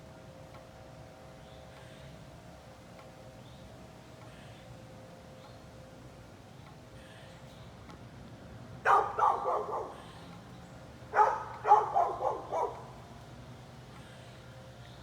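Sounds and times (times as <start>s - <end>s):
dog barking: 8.8s - 10.2s, 11.1s - 13.0s.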